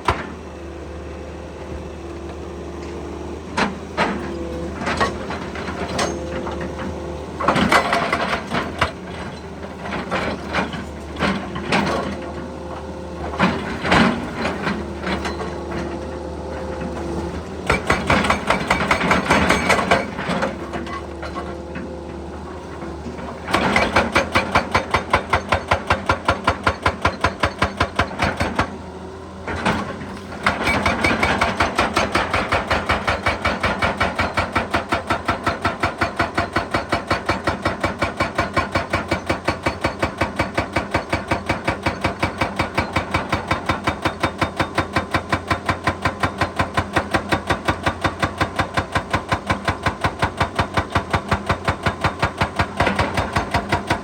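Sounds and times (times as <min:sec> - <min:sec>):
hydraulic hammer striking rock: 0:03.6 - 0:06.6, 0:17.6 - 0:21.5, 0:23.4 - 0:28.8, 0:29.5 - 0:54.0.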